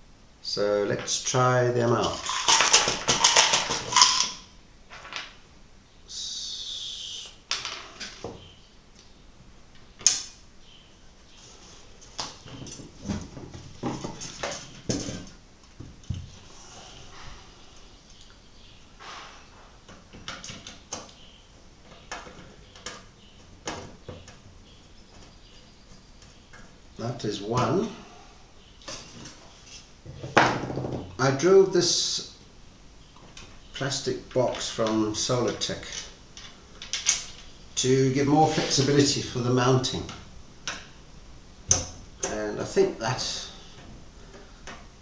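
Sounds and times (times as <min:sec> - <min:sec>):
metal parts scraping: 0:02.0 - 0:04.4
metal screws clattering and clicking: 0:02.1 - 0:04.4.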